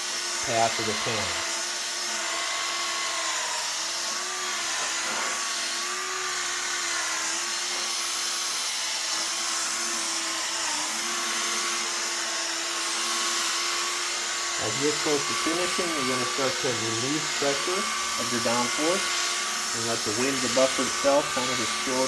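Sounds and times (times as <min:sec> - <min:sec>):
electric rotary buffer whining: 0:00.0 - 0:22.0.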